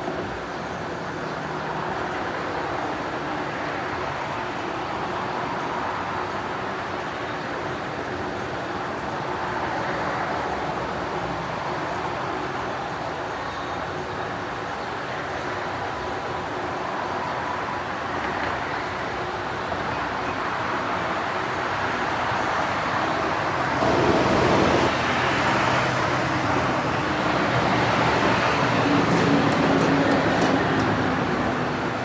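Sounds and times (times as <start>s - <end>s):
ceiling fan hum: 22.8s - 28.9s.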